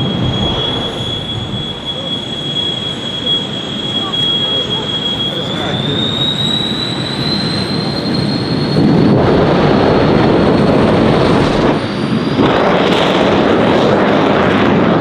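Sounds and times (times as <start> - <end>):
jet engine turbine whine: 0.0 - 15.0
loud rushing noise: 0.0 - 15.0.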